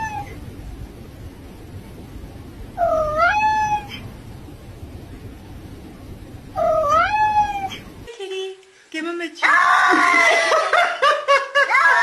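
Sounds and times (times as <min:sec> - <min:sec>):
cat meowing: 0:00.0 - 0:00.4, 0:02.8 - 0:04.0, 0:06.6 - 0:07.8.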